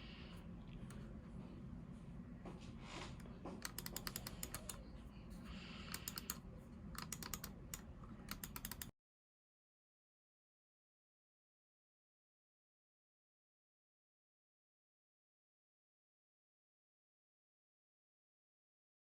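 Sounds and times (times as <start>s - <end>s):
low steady hum: 0.0s - 8.9s
mechanical keyboard key clicks: 3.6s - 4.8s, 7.0s - 8.9s.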